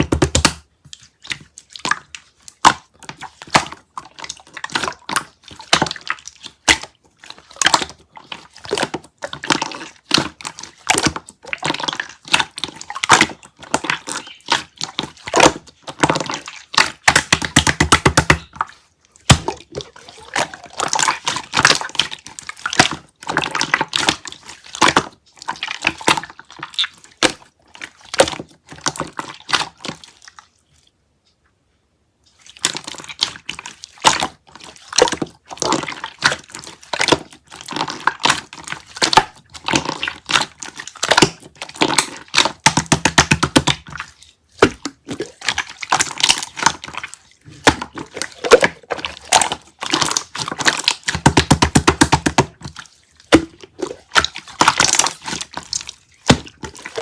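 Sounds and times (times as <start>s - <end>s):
close-up crackling and tapping: 0.0s - 1.0s, 16.8s - 18.6s, 42.5s - 43.9s, 50.1s - 53.6s.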